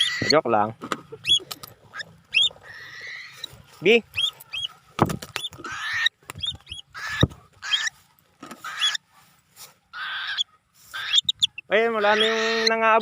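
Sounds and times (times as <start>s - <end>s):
cockatiels screeching: 0.0s - 0.6s, 1.2s - 8.0s, 8.6s - 9.1s, 9.9s - 13.0s
high chirps: 1.1s - 8.0s, 10.0s - 13.0s.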